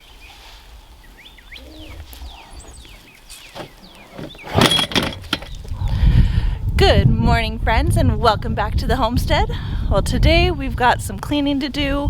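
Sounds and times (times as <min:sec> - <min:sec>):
birds chirping: 0:00.0 - 0:06.1
sharp clattering knocks: 0:03.5 - 0:05.7.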